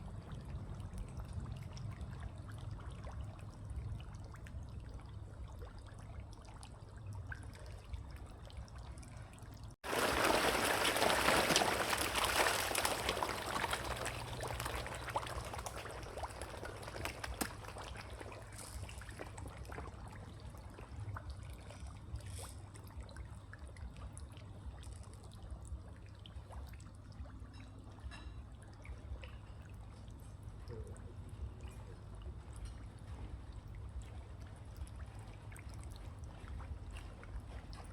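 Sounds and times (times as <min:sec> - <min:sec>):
water trickling: 0:00.1 - 0:37.9
water rushing and splashing: 0:09.8 - 0:19.5.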